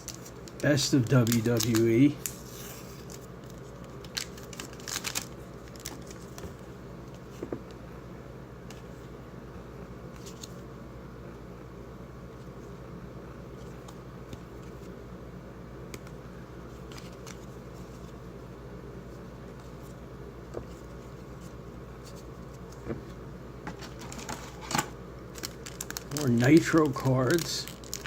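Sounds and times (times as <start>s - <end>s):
trading cards and packaging rustling: 0.0s - 7.6s, 16.7s - 18.2s, 23.7s - 28.0s
low appliance hum: 0.0s - 28.0s.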